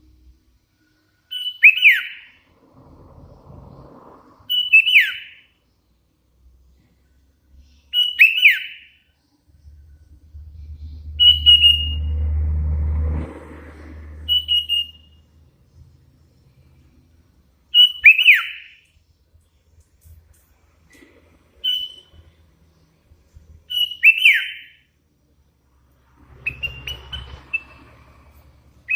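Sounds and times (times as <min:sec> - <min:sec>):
bird whistled calls: 0:01.3 - 0:02.4, 0:04.5 - 0:05.5, 0:07.9 - 0:09.0, 0:11.1 - 0:12.1, 0:14.2 - 0:15.2, 0:17.7 - 0:18.8, 0:21.6 - 0:22.2, 0:23.7 - 0:24.8, 0:26.4 - 0:27.8
low rumble: 0:02.4 - 0:04.5, 0:11.8 - 0:14.4.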